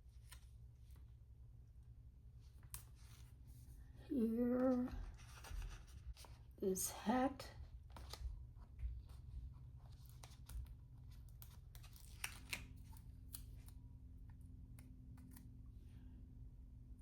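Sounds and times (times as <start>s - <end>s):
paper crackles: 4.6s - 6.5s, 7.7s - 13.8s.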